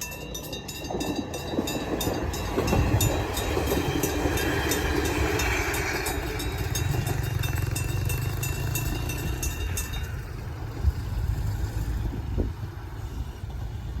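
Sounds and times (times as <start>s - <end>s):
level crossing bell ringing: 0.0s - 10.4s
diesel railcar engine rumble: 0.0s - 14.0s.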